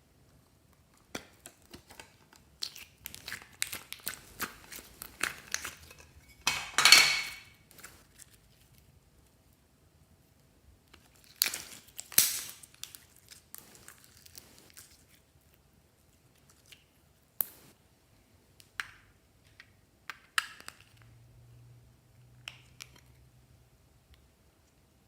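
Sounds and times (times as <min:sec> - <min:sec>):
slime crunching and crackling: 0:02.4 - 0:06.1, 0:11.0 - 0:15.5.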